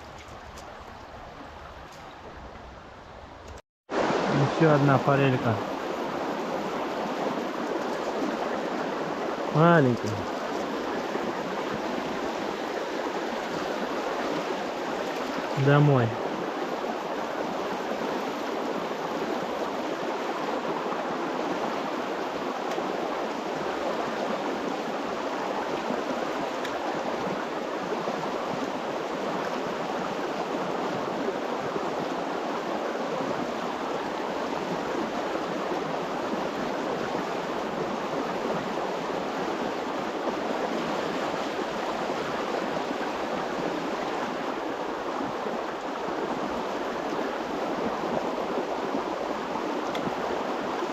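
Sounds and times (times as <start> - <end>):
stream water rushing: 0.0 - 50.9.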